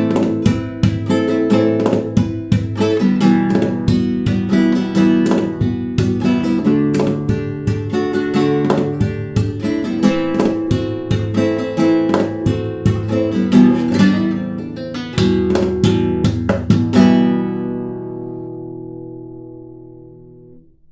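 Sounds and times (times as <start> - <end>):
acoustic guitar playing: 0.0 - 20.9.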